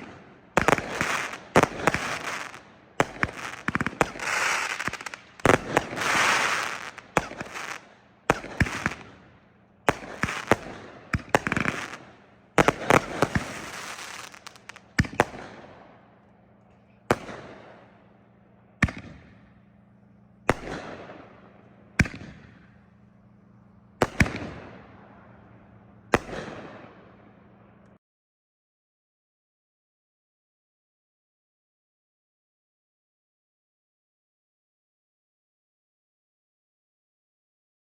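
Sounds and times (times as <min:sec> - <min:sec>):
fireworks bangs with crackle: 0:00.0 - 0:09.2, 0:09.8 - 0:15.8, 0:20.5 - 0:21.4, 0:24.0 - 0:24.8
firework shells booming: 0:00.0 - 0:16.0, 0:20.4 - 0:22.8, 0:24.0 - 0:25.0.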